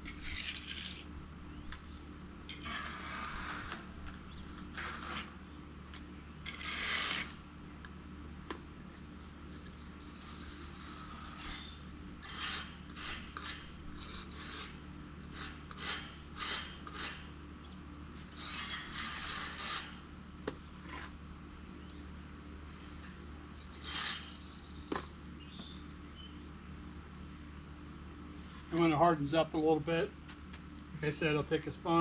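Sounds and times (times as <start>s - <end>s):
trowel scraping mortar: 0.0s - 1.1s, 2.5s - 4.0s, 4.7s - 5.3s, 6.4s - 7.4s, 10.3s - 17.2s, 18.2s - 20.0s, 20.8s - 21.2s, 23.7s - 24.5s.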